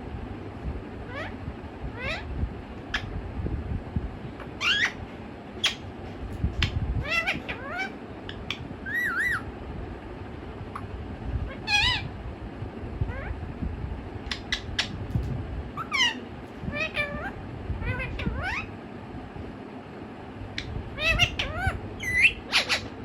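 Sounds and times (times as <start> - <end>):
parakeet wavering whistle: 1.1 - 2.3, 4.5 - 5.0, 7.0 - 9.5, 11.5 - 12.1, 15.8 - 16.2, 16.8 - 18.7, 21.0 - 22.9
parakeet squawking: 1.1 - 3.2, 4.4 - 5.9, 6.6 - 9.5, 11.5 - 12.1, 14.3 - 15.0, 15.8 - 18.7, 20.6 - 23.0.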